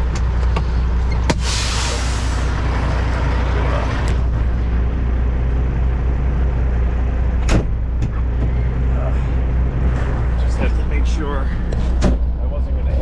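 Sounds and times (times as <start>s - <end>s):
truck diesel engine droning: 0.0s - 13.0s.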